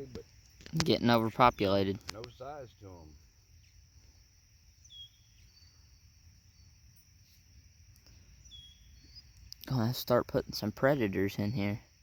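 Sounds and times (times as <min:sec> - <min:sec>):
insects trilling: 0:00.0 - 0:12.0
short bird chirps: 0:04.8 - 0:06.0, 0:08.0 - 0:09.5.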